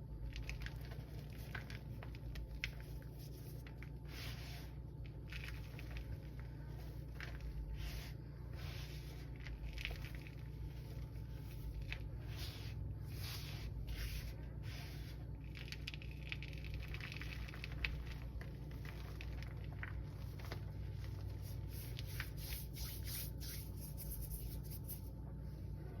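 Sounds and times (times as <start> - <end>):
steady low hum: 0.0 - 26.0
chalk squeaky crunching: 21.4 - 25.1.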